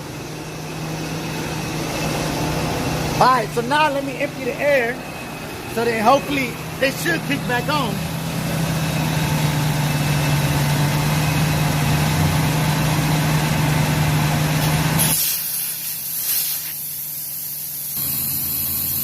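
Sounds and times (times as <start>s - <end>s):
compressed air hissing from valves: 14.6s - 19.0s.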